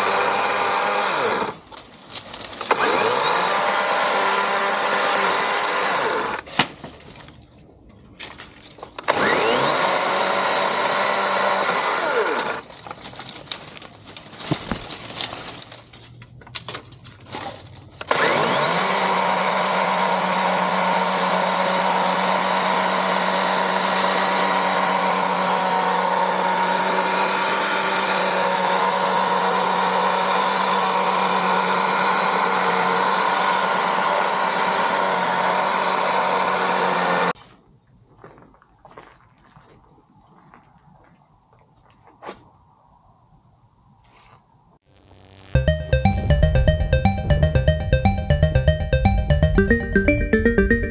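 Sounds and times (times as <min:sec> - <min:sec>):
electric chainsaw whining: 0:00.0 - 0:01.6, 0:02.6 - 0:06.4, 0:09.1 - 0:12.6, 0:18.1 - 0:37.3.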